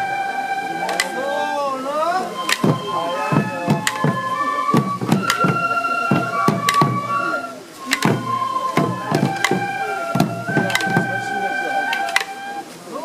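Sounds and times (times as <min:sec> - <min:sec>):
bamboo flutes playing: 0:00.0 - 0:13.0
sharp drum strikes: 0:02.4 - 0:11.4.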